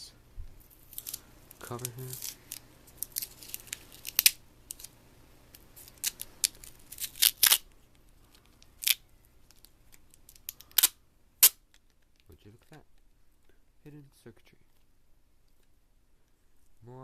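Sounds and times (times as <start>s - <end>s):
plastic film peeling with crackles: 0.7s - 12.4s.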